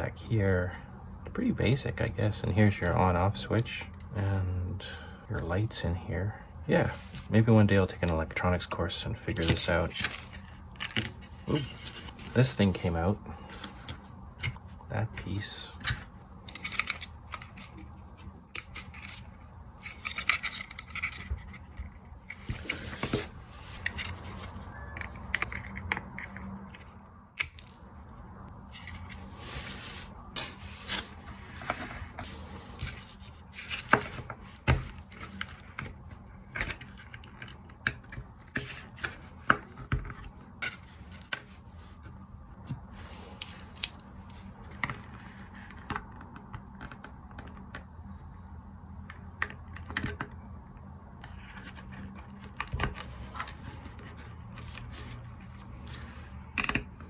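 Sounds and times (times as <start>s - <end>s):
plastic parts scraping: 9.3s - 27.7s.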